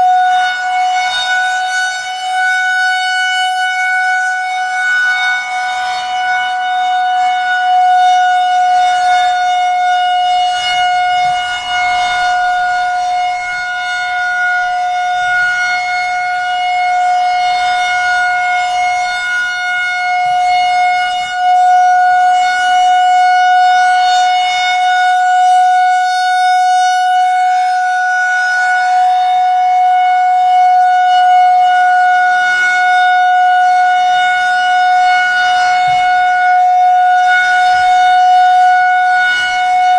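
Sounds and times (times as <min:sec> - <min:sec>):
steady outdoor warning siren: 0:00.0 - 0:39.9.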